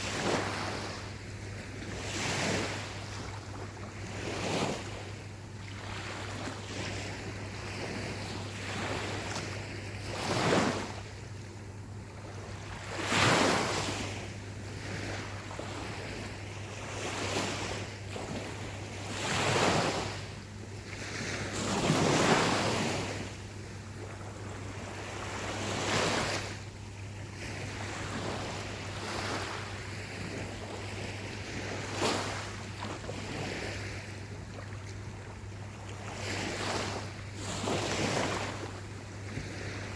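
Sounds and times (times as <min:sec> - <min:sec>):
ocean waves breaking on shore: 0:00.0 - 0:39.9
low steady hum: 0:10.8 - 0:13.0, 0:23.0 - 0:25.7, 0:26.4 - 0:39.9.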